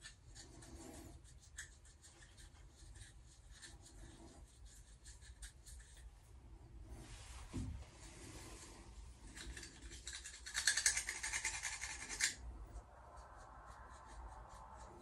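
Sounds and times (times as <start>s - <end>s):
rapid scratchy scraping: 9.3s - 15.0s.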